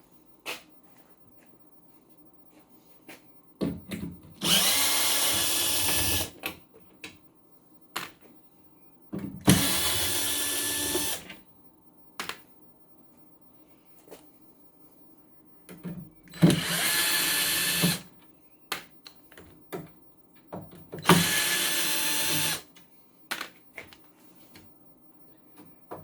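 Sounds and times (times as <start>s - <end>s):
handheld power drill running: 4.4s - 6.3s, 9.5s - 11.2s, 16.4s - 18.0s, 21.0s - 22.6s.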